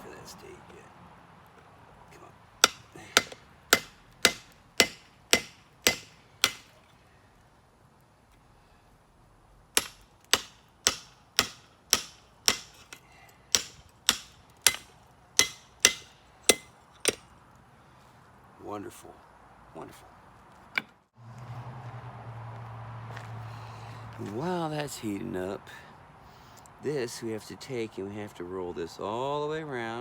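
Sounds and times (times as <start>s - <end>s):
hammer striking steel on anvil: 2.6s - 6.8s, 9.8s - 17.2s.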